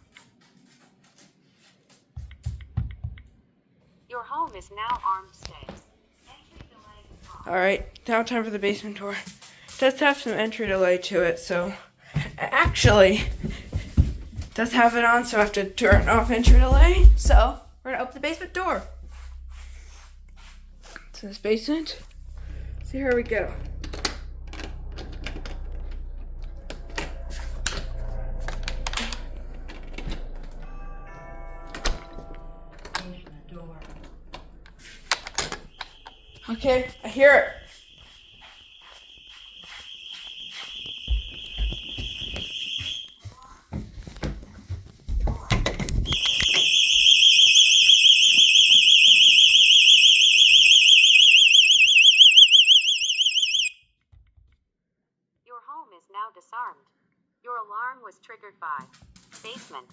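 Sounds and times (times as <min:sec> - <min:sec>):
alarm siren warbling: 0:35.6 - 0:43.1, 0:46.1 - 0:53.8.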